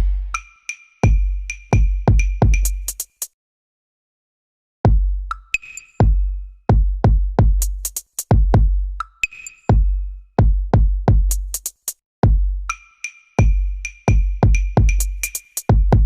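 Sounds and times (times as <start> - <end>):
electronic drum-machine beat: 0.0 - 3.0, 9.7 - 12.5, 13.4 - 16.0.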